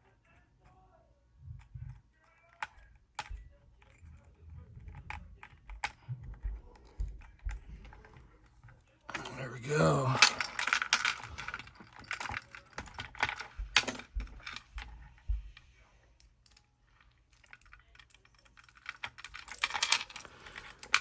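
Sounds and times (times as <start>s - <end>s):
padlock and picks clicking: 10.2s - 15.0s, 16.2s - 21.0s.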